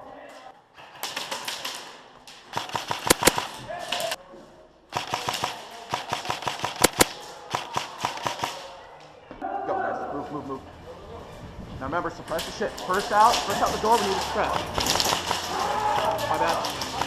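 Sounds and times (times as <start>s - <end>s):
airsoft guns firing bursts: 1.0s - 4.2s, 4.9s - 8.7s, 12.4s - 17.0s
loud gunshots: 2.5s - 4.2s, 5.0s - 8.6s, 13.4s - 17.0s.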